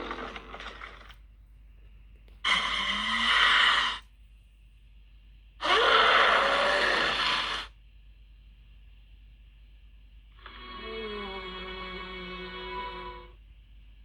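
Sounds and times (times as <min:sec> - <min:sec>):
breath-like creature call: 0:02.5 - 0:04.0, 0:05.6 - 0:07.7.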